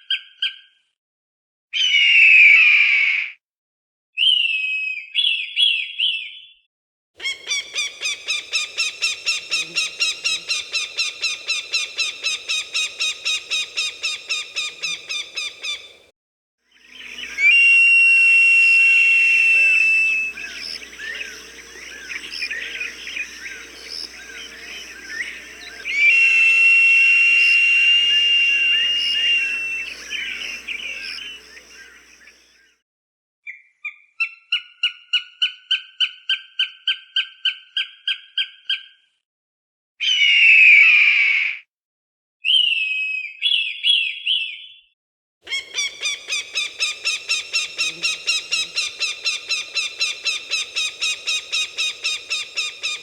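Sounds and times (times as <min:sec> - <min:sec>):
birds chirping and whistling: 0:07.2 - 0:16.0, 0:16.8 - 0:32.4, 0:45.5 - 0:53.0
hawk cries: 0:07.2 - 0:16.0, 0:17.0 - 0:32.0, 0:45.5 - 0:53.0
hawk harsh scream: 0:25.8 - 0:31.2.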